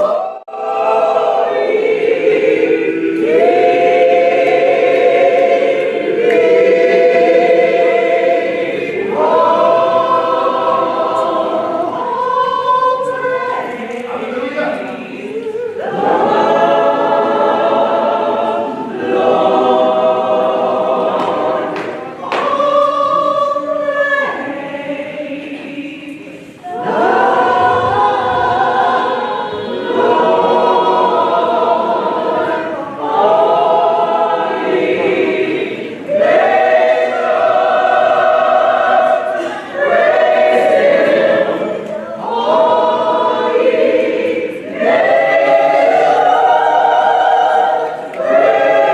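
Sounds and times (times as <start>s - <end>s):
choir singing a hymn: 0.0s - 48.9s.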